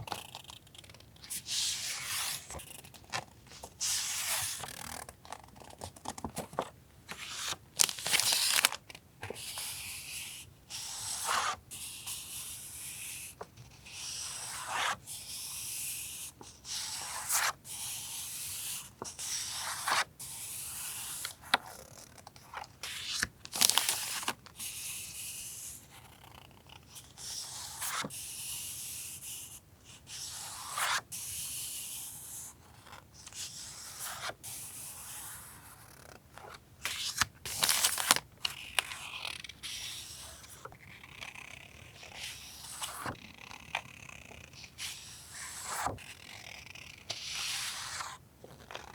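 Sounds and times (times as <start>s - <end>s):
paper crackling: 5.6s - 9.0s, 23.0s - 24.4s, 37.0s - 39.4s
paper sheets rustling: 6.1s - 8.9s, 23.0s - 24.4s, 36.9s - 39.4s.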